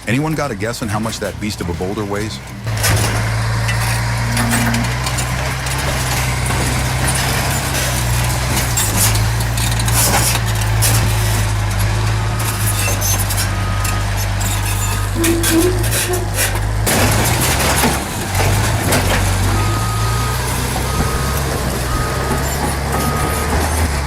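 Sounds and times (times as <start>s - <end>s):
heavy machine engine humming: 0.0s - 24.0s
short knocks and scrapes: 12.4s - 19.6s.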